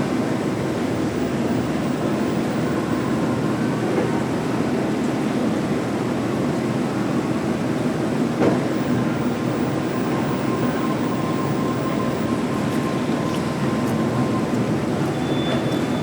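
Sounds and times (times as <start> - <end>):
low rumble of machinery and traffic: 0.0 - 16.0
faint high steady tone: 8.7 - 16.0.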